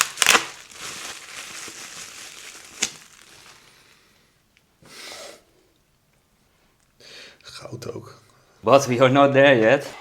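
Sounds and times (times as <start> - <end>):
packaging crinkling: 0.0 - 4.1.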